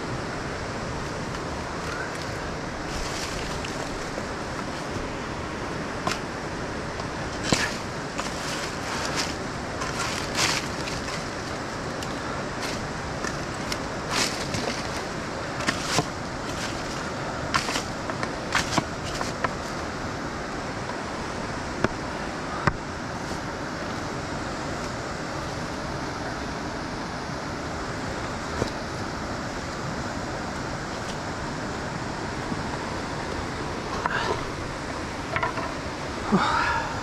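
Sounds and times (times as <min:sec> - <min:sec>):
whitewater rushing: 0:00.0 - 0:37.0
footsteps on rocks: 0:01.1 - 0:05.1, 0:07.4 - 0:19.7.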